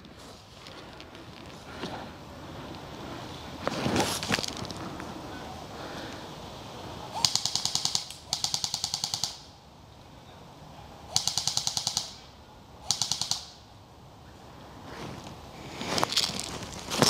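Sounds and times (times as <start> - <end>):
airsoft gun firing bursts: 7.2 - 9.6, 11.1 - 13.6.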